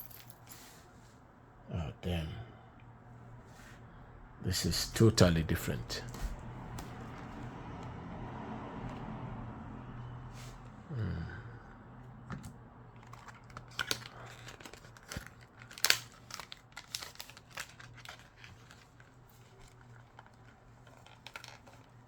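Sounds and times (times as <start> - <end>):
plastic packaging crinkling: 13.0 - 22.0.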